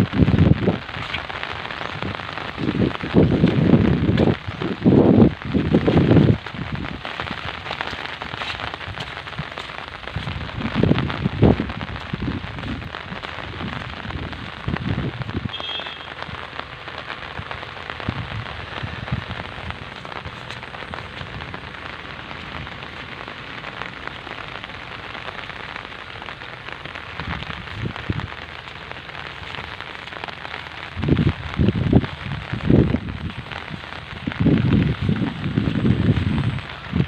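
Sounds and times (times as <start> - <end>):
rain pattering: 0.0 - 37.0.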